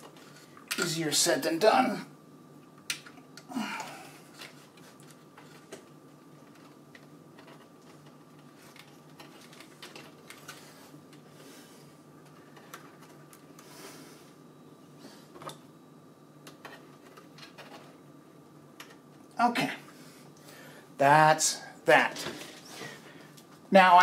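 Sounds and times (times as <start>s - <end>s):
computer cables clicking and rustling: 0.0s - 1.0s, 2.6s - 13.8s, 15.3s - 15.7s, 16.4s - 19.4s.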